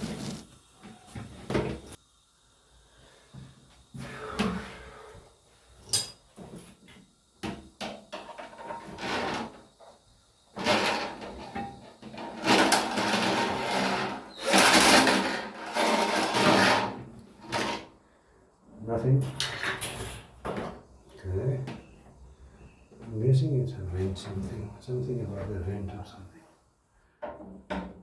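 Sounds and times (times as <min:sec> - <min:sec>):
harsh scraping in drain: 0:08.5 - 0:09.6, 0:10.6 - 0:17.9
drain rod knocking and clattering: 0:10.6 - 0:17.8.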